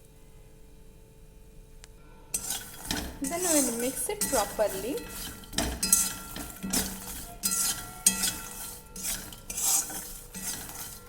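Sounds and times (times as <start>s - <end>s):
spoon scraping and clinking in pot: 2.3s - 11.0s.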